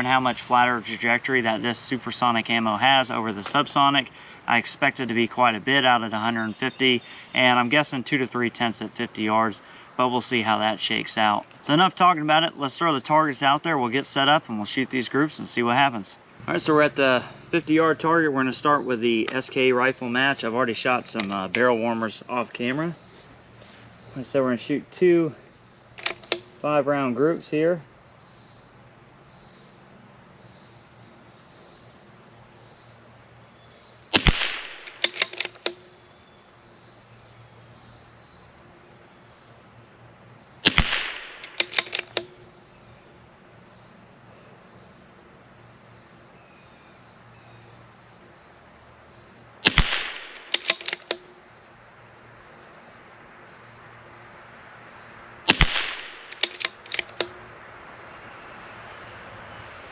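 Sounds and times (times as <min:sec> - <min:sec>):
insect trill: 0:00.0 - 0:59.9
rifle bolt clicks: 0:21.2 - 0:21.7, 0:26.0 - 0:26.5, 0:34.2 - 0:35.8, 0:40.7 - 0:42.4, 0:49.7 - 0:51.3, 0:55.5 - 0:57.4
rifle shots: 0:34.2 - 0:35.7, 0:40.6 - 0:42.2, 0:49.6 - 0:51.2, 0:55.5 - 0:57.3.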